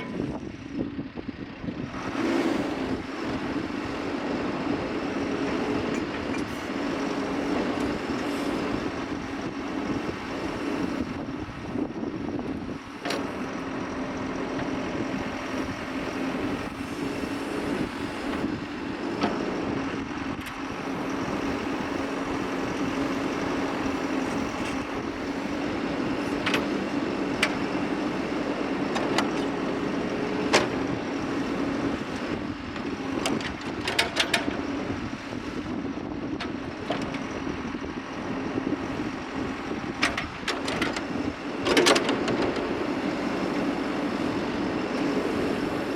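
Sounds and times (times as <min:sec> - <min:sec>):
diesel engine running: 0:00.0 - 0:45.9
machine clanks and knocks: 0:33.2 - 0:34.6.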